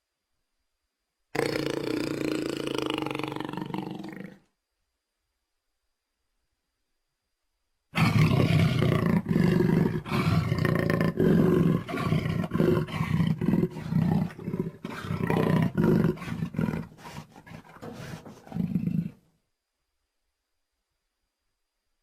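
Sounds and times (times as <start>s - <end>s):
creature growling roar: 1.4s - 4.4s, 8.0s - 19.2s.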